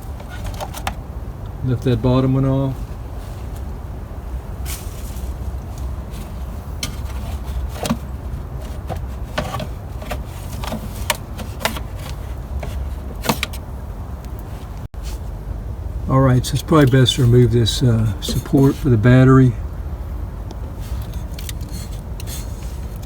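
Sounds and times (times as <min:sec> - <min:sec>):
steady low rumble: 0:01.0 - 0:23.0
plastic parts clicking and knocking: 0:06.8 - 0:13.6.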